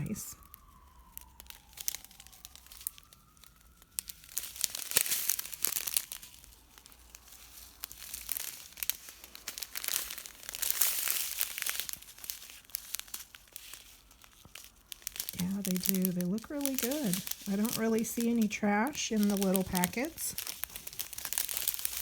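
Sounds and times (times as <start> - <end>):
plastic packets crinkling: 0.0 - 22.0.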